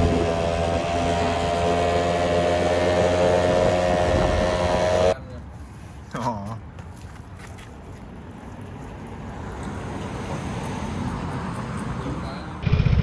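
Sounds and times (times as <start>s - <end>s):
two-stroke engine running: 0.0s - 5.2s.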